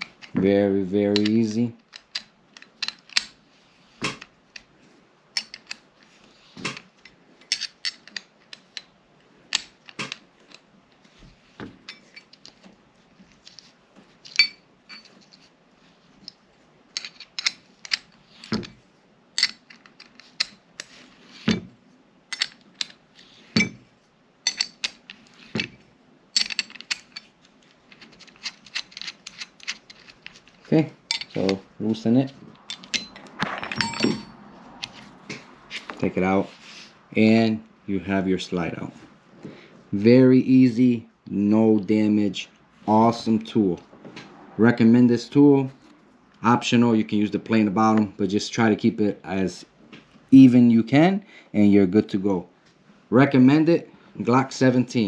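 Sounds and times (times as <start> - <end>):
metal tool clicks and clinks: 1.1 - 3.4, 5.4 - 5.8, 7.4 - 8.9, 11.8 - 12.6, 14.2 - 15.4, 17.0 - 18.7, 19.4 - 20.9, 22.3 - 23.0, 24.4 - 25.8, 26.4 - 27.3, 27.9 - 31.6, 32.5 - 35.0.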